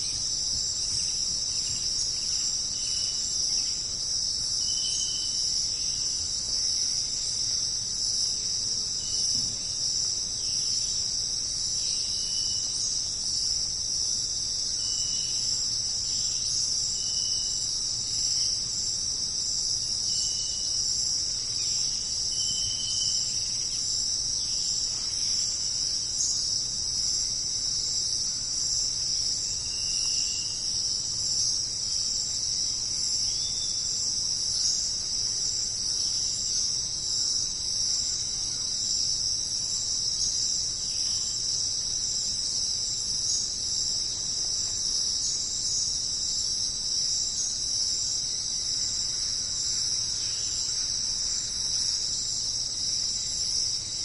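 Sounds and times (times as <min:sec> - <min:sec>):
insect chirps: 0:00.0 - 0:54.0
insects chorus: 0:00.0 - 0:54.0.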